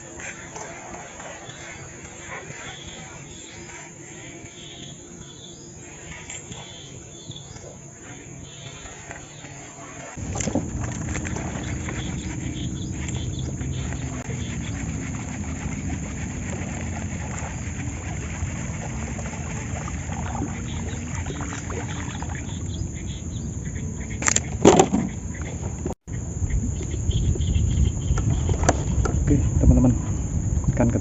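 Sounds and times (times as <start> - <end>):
small boat engine running: 8.2 - 29.9.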